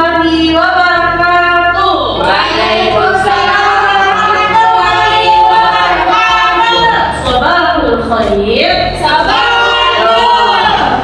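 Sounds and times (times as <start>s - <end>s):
woman and children singing: 0.3s - 7.4s.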